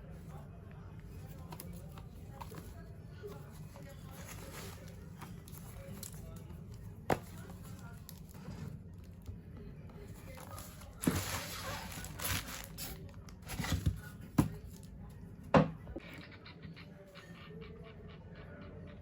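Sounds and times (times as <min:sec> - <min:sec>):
packaging rustling and crinkling: 0:10.3 - 0:14.1.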